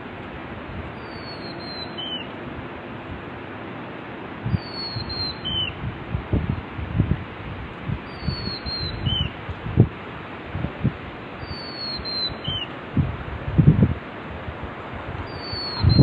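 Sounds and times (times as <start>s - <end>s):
wind buffeting microphone: 0.0s - 3.4s, 4.3s - 16.0s
river rushing: 0.0s - 16.0s
bird whistled call: 1.0s - 2.3s, 4.5s - 5.8s, 8.1s - 9.4s, 11.4s - 12.7s, 15.3s - 16.0s.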